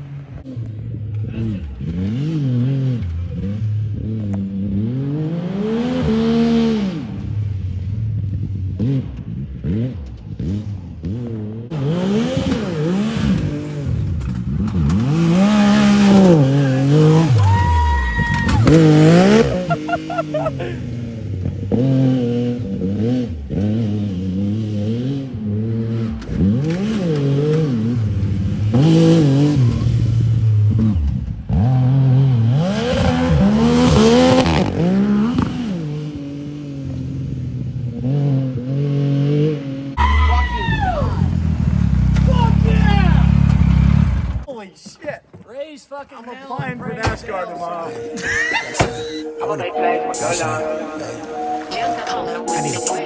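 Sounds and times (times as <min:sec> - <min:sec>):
engine revving: 0:00.0 - 0:40.2
high-pitched tone: 0:47.0 - 0:53.0.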